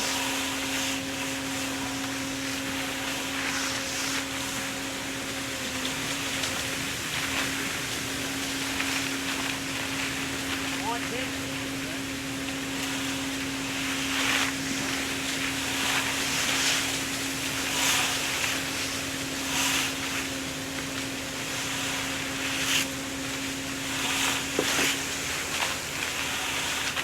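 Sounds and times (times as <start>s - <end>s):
engine hum: 0.0s - 27.0s.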